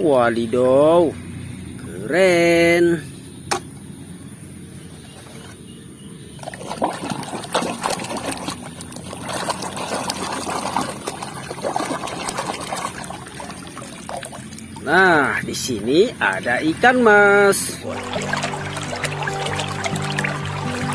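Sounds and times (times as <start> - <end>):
water splashing and trickling: 6.3 - 20.9.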